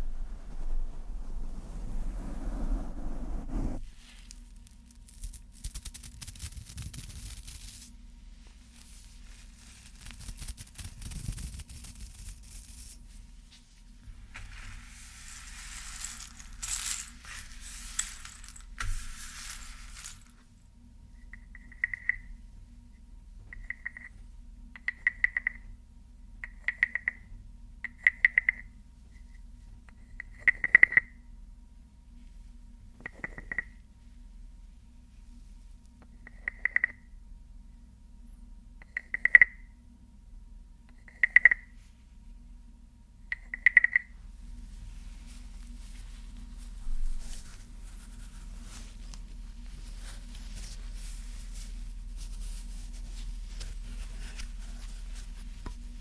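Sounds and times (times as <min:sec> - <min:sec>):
scratching and rubbing hiss: 0:00.0 - 0:07.9, 0:08.6 - 0:13.1, 0:14.2 - 0:20.4.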